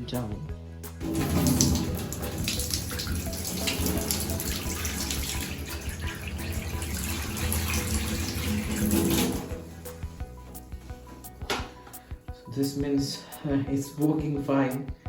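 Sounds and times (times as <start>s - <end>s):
water pouring from tank: 1.0s - 9.8s.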